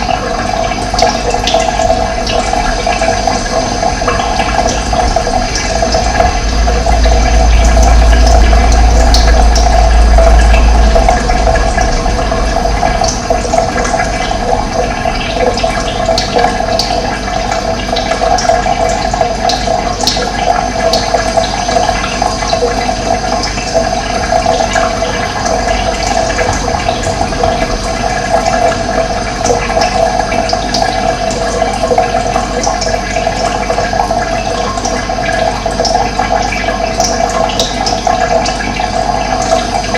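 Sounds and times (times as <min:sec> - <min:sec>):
running water: 0:00.0 - 0:39.9
deep low rumble: 0:01.3 - 0:18.4, 0:22.6 - 0:31.5.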